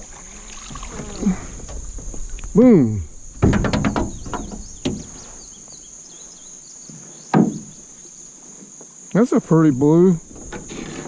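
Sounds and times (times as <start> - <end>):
high insect drone: 0.0 - 11.0
knocks in a boat: 3.4 - 5.1, 7.3 - 7.8.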